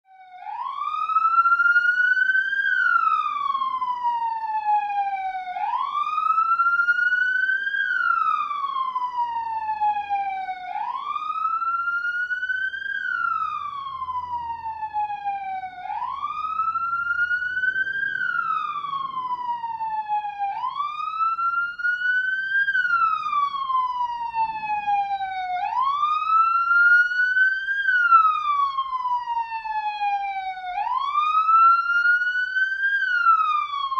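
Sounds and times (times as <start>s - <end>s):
police siren wailing: 0.1s - 33.9s.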